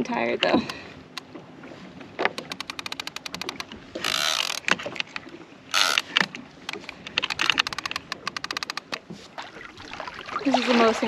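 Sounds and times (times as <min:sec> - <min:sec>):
fishing reel clicking: 0:02.4 - 0:04.7, 0:05.7 - 0:09.0.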